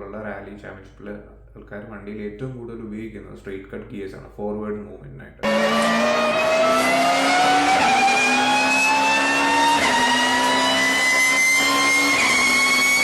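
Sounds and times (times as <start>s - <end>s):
car gear whine accelerating: 5.4s - 13.0s.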